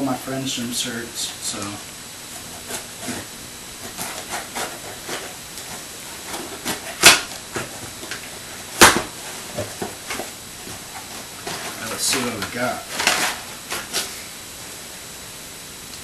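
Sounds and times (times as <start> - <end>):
box rustling and scraping: 2.3 - 14.3.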